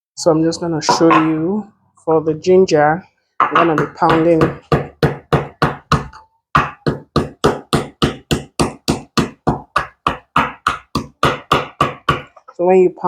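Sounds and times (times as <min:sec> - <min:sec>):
ginger being pounded: 0:00.8 - 0:01.5, 0:03.4 - 0:12.4.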